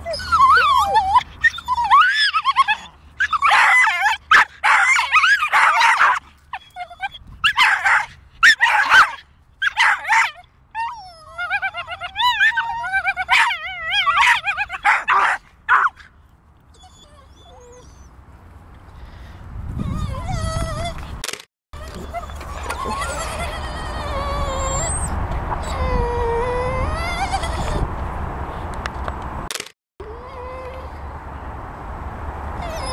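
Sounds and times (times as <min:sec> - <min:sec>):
dogs making high wavering calls: 0:00.0 - 0:16.1, 0:21.8 - 0:27.9, 0:32.6 - 0:32.9.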